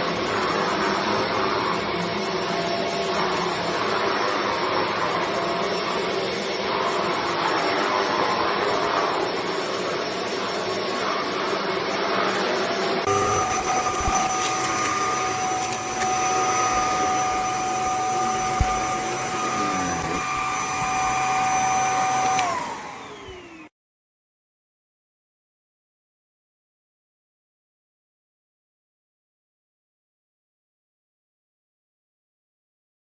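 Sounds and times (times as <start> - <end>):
vacuum cleaner motor whine: 0.0 - 23.7.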